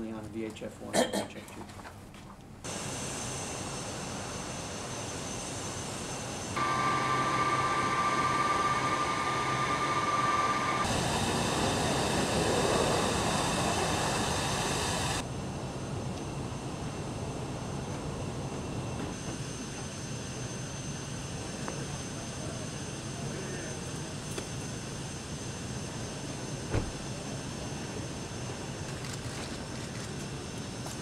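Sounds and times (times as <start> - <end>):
jet engines running: 2.6 - 31.0
high steady whine: 2.7 - 15.2.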